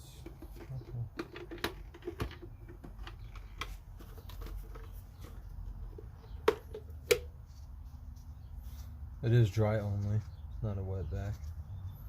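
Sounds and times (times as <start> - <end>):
plastic parts clicking and tapping: 0.2 - 5.4, 6.2 - 7.3.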